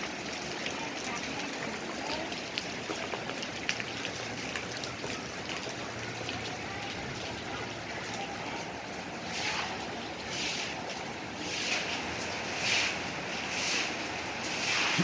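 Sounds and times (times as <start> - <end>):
raindrops ticking on surfaces: 0.0 - 15.0
heavy rain hissing: 6.6 - 15.0.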